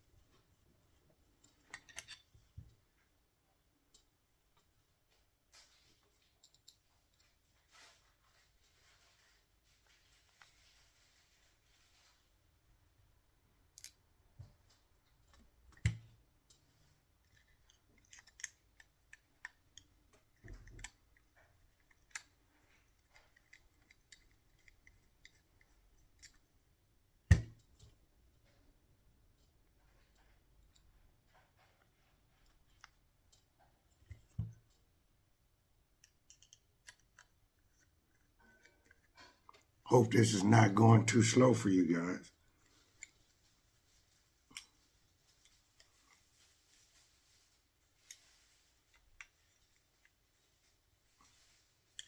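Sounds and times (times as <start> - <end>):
small parts and hand tools clicking: 1.4 - 2.3, 15.1 - 28.0, 35.9 - 39.8.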